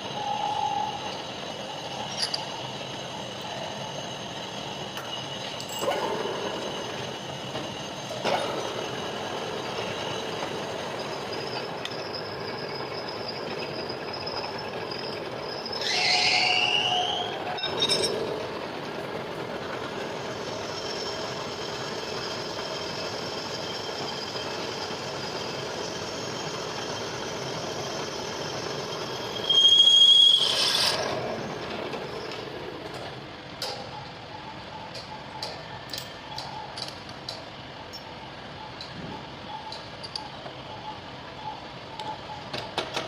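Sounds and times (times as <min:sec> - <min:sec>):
high-pitched squeal: 0:00.0 - 0:18.4, 0:20.2 - 0:32.3.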